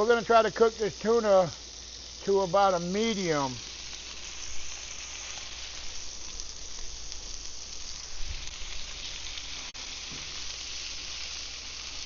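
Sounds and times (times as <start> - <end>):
fish sizzling on a grill: 0.0 - 12.0.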